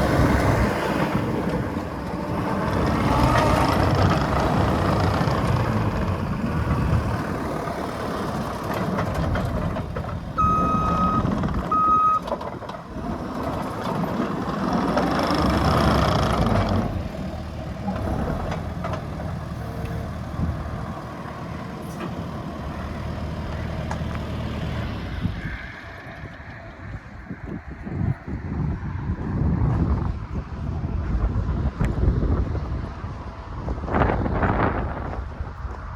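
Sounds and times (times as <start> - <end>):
diesel engine running: 0.0 - 27.2
backup alarm beeping: 10.4 - 12.2.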